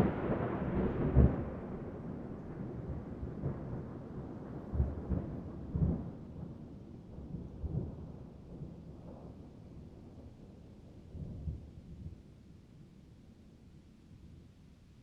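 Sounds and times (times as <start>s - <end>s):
thunder rumbling: 0.0s - 6.6s.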